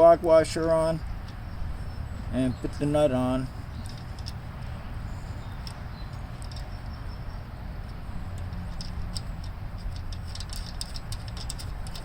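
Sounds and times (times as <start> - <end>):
metallic ticks of nut and washer: 3.8 - 4.4, 5.6 - 7.0, 7.8 - 12.0.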